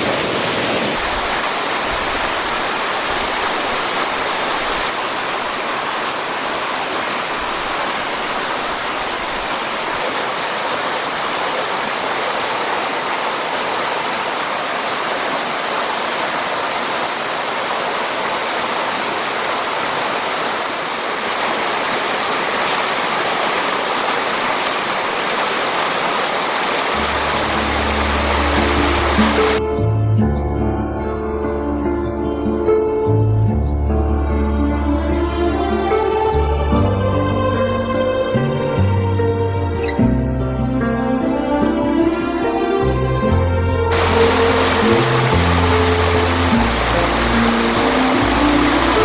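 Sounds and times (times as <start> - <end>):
waterfall rushing: 0.0 - 29.6, 43.9 - 49.0.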